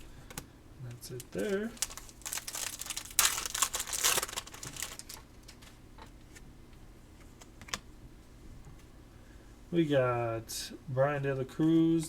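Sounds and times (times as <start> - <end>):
card pack wrapper crinkling and tearing: 1.2 - 5.7.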